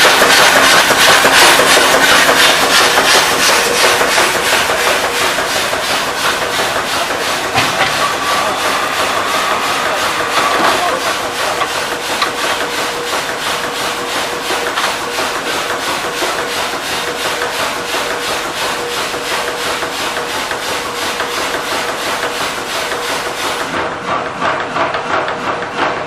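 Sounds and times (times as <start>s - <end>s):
rapid hammering on metal: 0.0s - 23.4s
steady hum: 1.6s - 14.6s.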